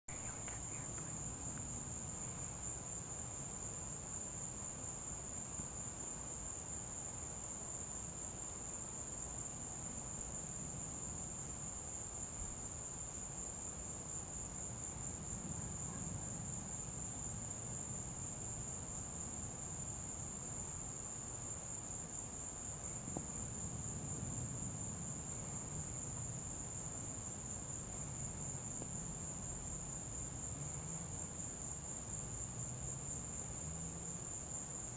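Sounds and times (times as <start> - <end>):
faint low rumble: 0.1 - 2.7
night insects trilling: 0.1 - 34.9.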